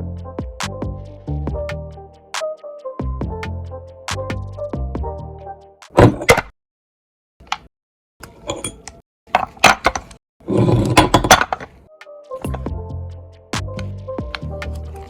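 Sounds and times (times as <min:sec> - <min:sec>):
hard objects clinking and knocking: 0:08.4 - 0:11.8.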